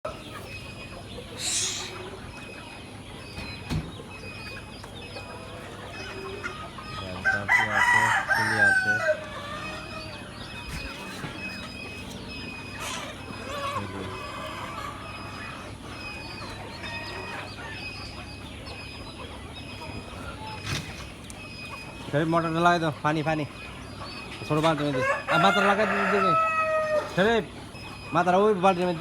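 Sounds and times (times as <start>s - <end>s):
chickens clucking: 0.1s - 29.0s
rooster crowing: 7.0s - 10.4s, 12.8s - 15.4s, 24.7s - 27.3s.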